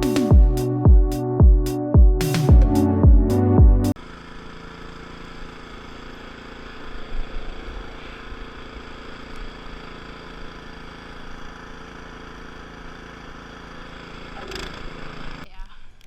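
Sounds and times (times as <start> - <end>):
snowblower engine running: 4.0 - 15.4.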